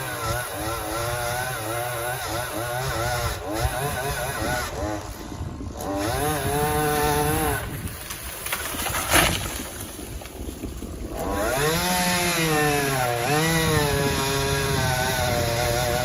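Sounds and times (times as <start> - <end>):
chainsaw revving: 0.0 - 16.0
sharp crack: 8.0 - 10.4.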